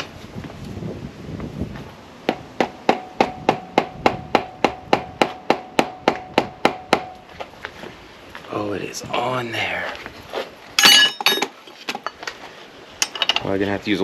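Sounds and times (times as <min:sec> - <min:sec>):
hammer striking metal: 0:02.3 - 0:07.1, 0:10.8 - 0:11.5.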